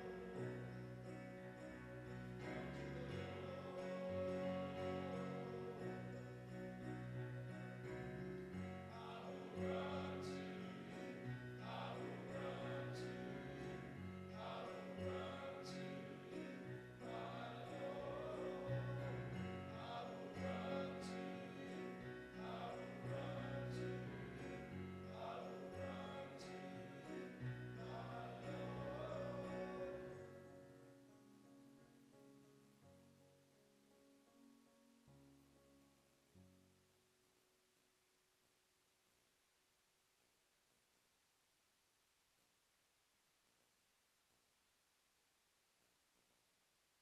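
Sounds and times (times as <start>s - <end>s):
slow music with singing: 0.0s - 30.9s.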